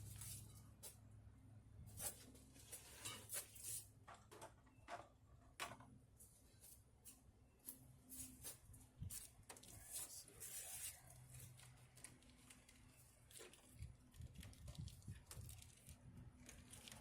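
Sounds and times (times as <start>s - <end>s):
faint clicks and rustles: 6.2s - 17.0s.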